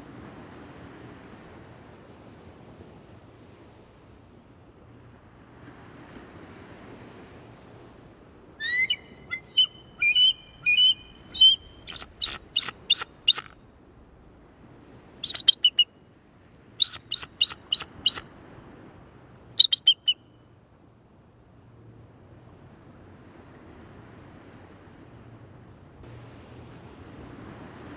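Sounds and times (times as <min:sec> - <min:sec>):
eagle calling: 0:08.6 - 0:13.5, 0:15.2 - 0:15.9, 0:16.8 - 0:18.2, 0:19.6 - 0:20.2.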